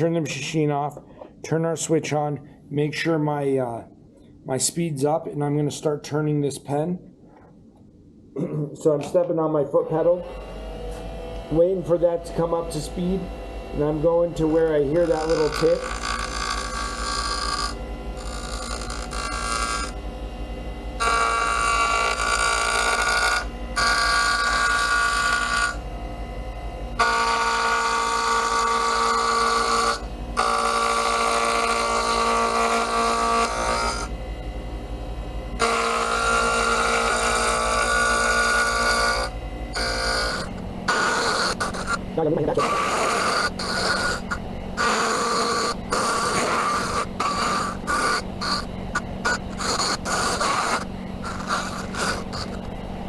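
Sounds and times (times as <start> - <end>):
lathe motor humming: 10.0 - 20.0, 20.9 - 53.0
lathe tool cutting wood: 10.0 - 20.0, 21.0 - 25.8, 27.0 - 34.2, 35.5 - 52.7.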